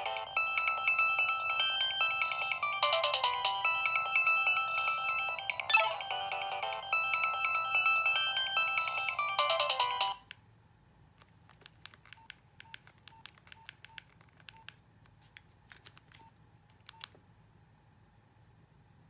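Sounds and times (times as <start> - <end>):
electronic ringtone melody: 0.0 - 10.2
faint irregular clicks: 11.2 - 17.2.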